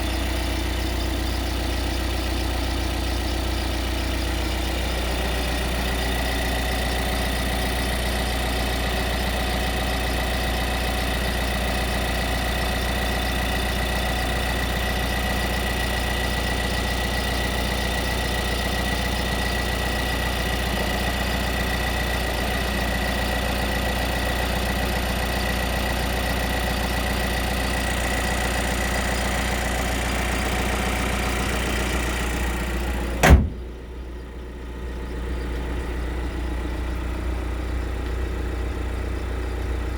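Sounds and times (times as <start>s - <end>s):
car engine idling: 0.0s - 39.9s
sharp knock: 33.2s - 33.6s.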